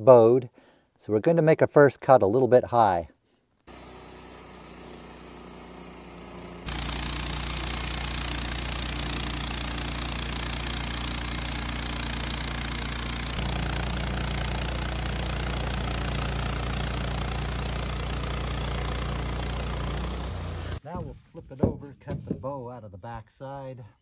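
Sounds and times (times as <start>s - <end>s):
sawmill engine hum: 3.7s - 20.8s.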